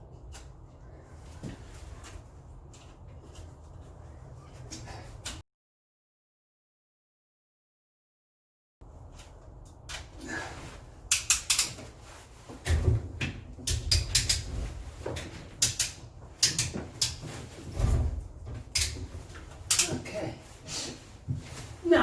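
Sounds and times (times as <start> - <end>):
clicks and knocks of tools: 11.1 - 11.9, 13.6 - 14.5, 15.1 - 17.4, 18.7 - 20.1.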